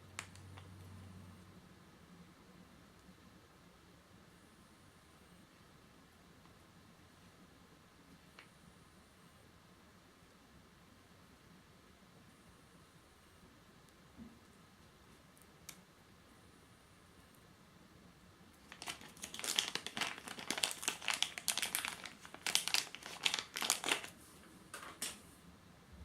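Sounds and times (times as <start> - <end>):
packaging crinkling: 18.6 - 24.2, 24.8 - 25.2.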